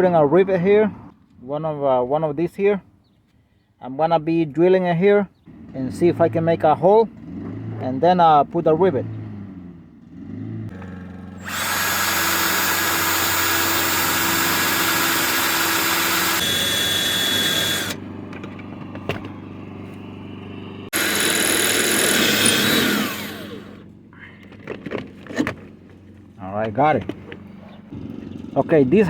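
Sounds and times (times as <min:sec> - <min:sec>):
power drill boring sheet metal: 0:11.4 - 0:18.0, 0:20.9 - 0:23.8.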